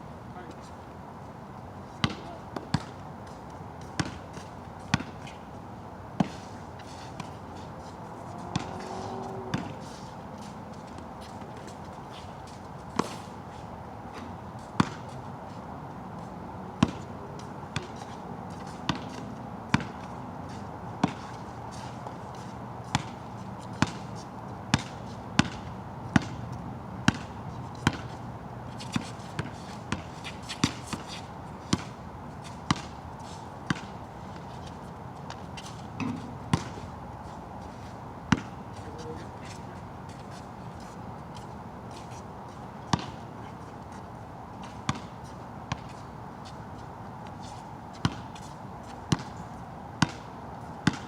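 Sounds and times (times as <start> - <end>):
basketball bouncing on wet court: 2.0 - 2.9, 4.0 - 4.2, 4.9 - 5.1, 8.4 - 8.8, 9.4 - 9.8, 16.8 - 17.0, 18.9 - 20.1, 22.9 - 23.1, 23.8 - 24.0, 24.7 - 26.4, 27.1 - 28.1, 32.7 - 32.9, 36.0 - 36.8, 38.3 - 38.6, 44.9 - 45.1, 48.0 - 48.3, 49.1 - 49.3, 50.0 - 51.0.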